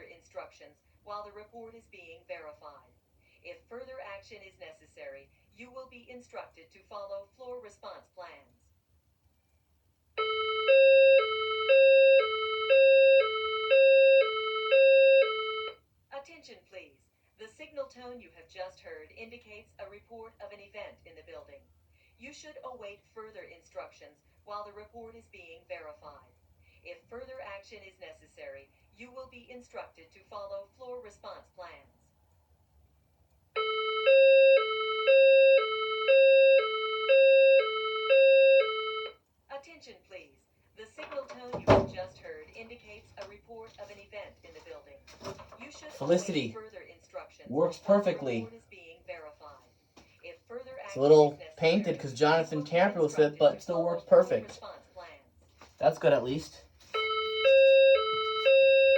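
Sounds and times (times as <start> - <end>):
two-tone fire alarm: 10.2 - 15.8, 33.6 - 39.2, 56.9 - 58.9.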